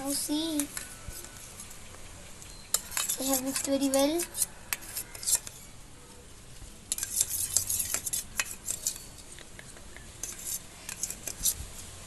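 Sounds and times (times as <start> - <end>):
spoon clinking against dish: 2.5 - 3.7.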